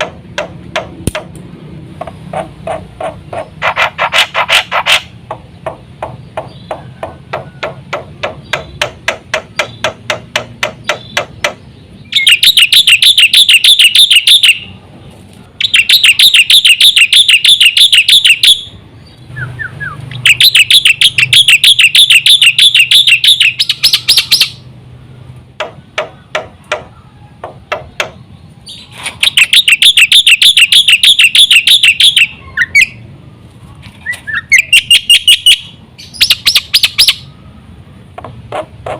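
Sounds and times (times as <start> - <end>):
bird clicking calls: 0.0 - 14.6, 15.6 - 18.6, 19.6 - 24.6, 25.6 - 28.3, 29.2 - 32.9
bird rattling trilled song: 6.0 - 14.7, 15.6 - 18.7, 19.5 - 24.6, 28.6 - 33.0, 34.0 - 37.3.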